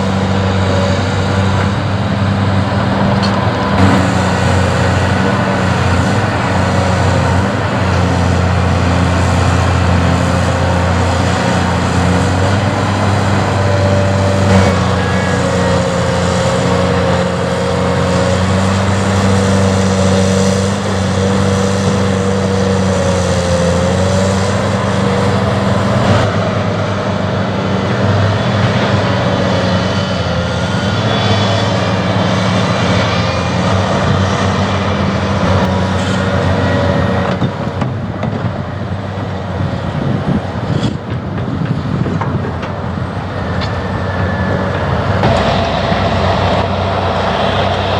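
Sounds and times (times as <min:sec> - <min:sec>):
thin wavering whine: 0:00.0 - 0:07.6
heavy diesel engine running: 0:00.0 - 0:47.9.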